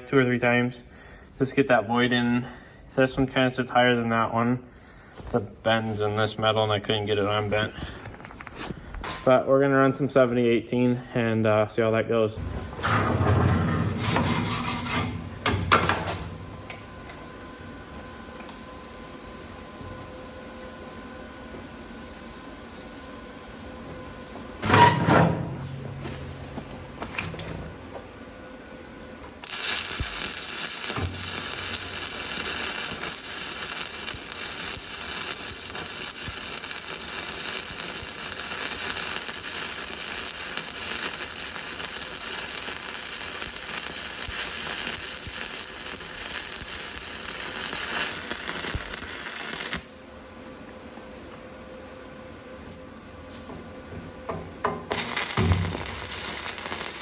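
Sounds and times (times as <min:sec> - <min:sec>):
metal clank: 0:12.4 - 0:16.5, 0:24.6 - 0:27.6
welding arc crackling: 0:29.3 - 0:50.0, 0:54.9 - 0:57.0.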